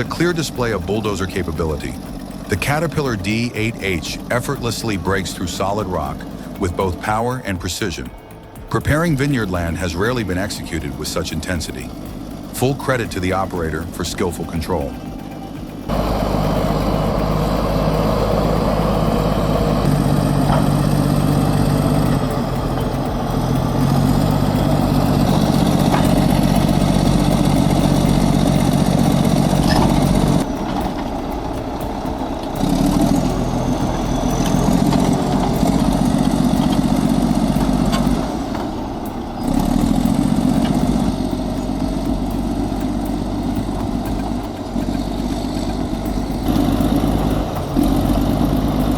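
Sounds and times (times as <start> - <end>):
bulldozer diesel engine working: 0.0 - 48.9.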